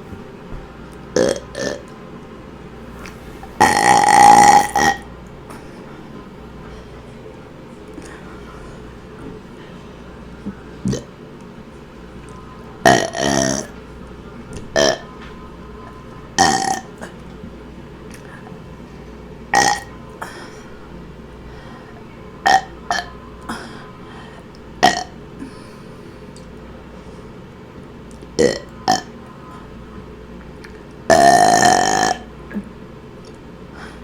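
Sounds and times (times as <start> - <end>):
steady low hum: 0.0 - 34.0
woman burping: 1.2 - 1.8, 3.6 - 5.0, 19.5 - 19.9, 24.8 - 25.2, 31.1 - 32.7.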